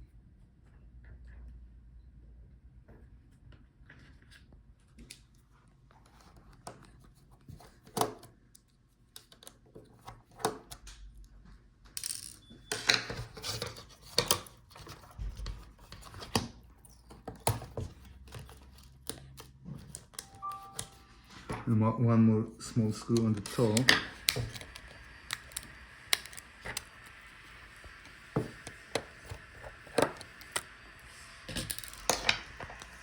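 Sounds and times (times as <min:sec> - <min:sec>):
screwdriver clicking on plastic: 0:23.2 - 0:27.2, 0:27.9 - 0:30.7.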